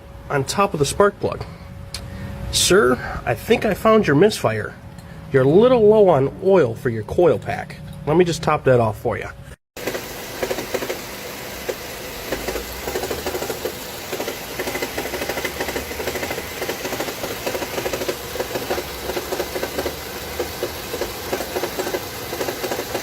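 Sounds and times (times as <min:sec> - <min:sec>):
car engine idling: 0:09.8 - 0:23.0
fast uneven engine ticking: 0:09.8 - 0:23.0.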